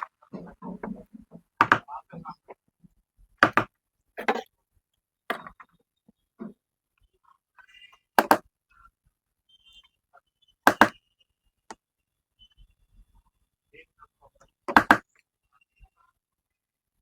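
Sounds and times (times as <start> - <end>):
hard objects knocking on work surface: 0.3 - 1.9, 3.4 - 4.4, 14.7 - 15.0.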